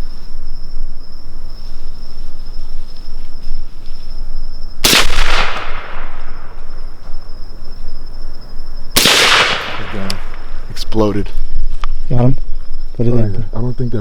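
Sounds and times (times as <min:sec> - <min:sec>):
insect trill: 0:00.0 - 0:14.0
rifle shots with echo: 0:04.8 - 0:06.5, 0:09.0 - 0:10.4.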